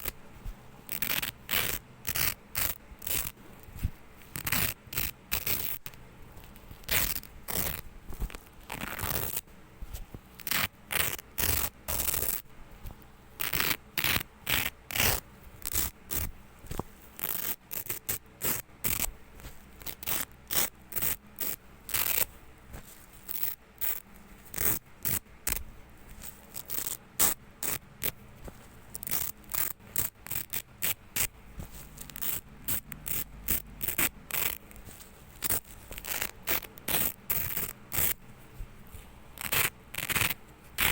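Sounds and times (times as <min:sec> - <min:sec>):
velcro tearing apart: 0:00.9 - 0:03.4, 0:04.3 - 0:09.4, 0:10.4 - 0:12.4, 0:13.4 - 0:16.3, 0:17.2 - 0:19.1, 0:19.8 - 0:22.3, 0:23.3 - 0:25.6, 0:26.2 - 0:28.2, 0:28.9 - 0:38.2, 0:39.4 - 0:40.9.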